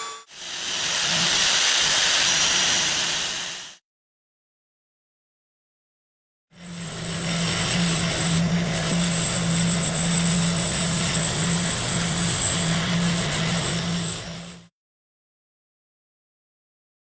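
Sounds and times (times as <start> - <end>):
motor humming and whining: 6.6 - 14.7.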